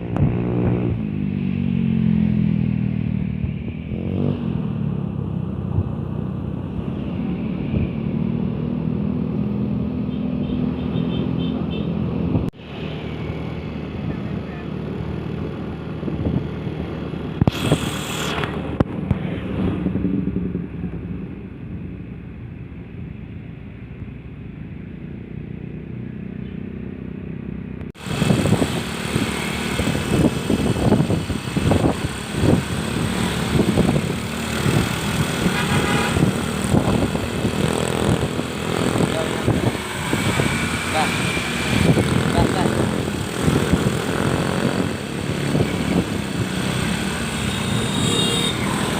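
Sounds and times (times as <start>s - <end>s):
vehicle engines running: 0.0s - 48.9s
vehicle passing whoosh: 14.9s - 22.5s, 24.3s - 48.9s.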